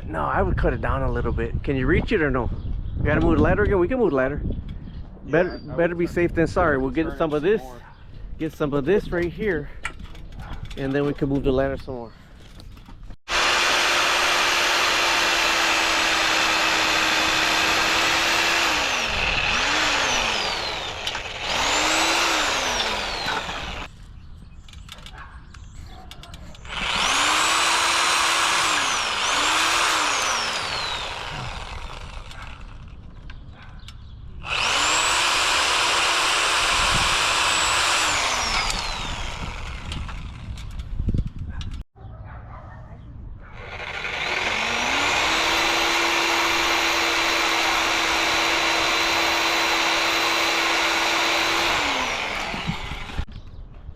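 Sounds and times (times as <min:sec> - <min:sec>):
reciprocating saw cutting branches: 0:13.2 - 0:23.9, 0:25.8 - 0:33.0, 0:34.4 - 0:40.8, 0:43.5 - 0:53.3.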